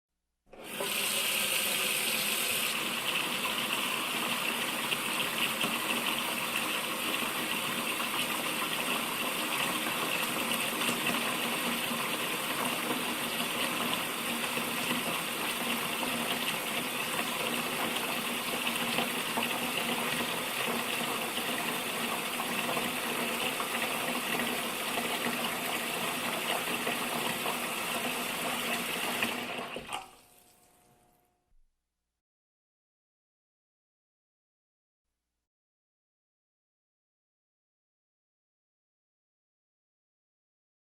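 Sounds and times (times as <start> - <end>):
water gushing from a spout: 0.6 - 30.6.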